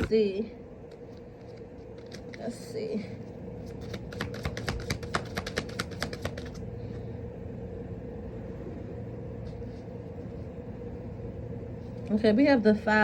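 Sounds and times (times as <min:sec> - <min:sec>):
faint steady hum: 0:00.0 - 0:13.0
cards being shuffled: 0:00.9 - 0:02.5, 0:03.6 - 0:06.6.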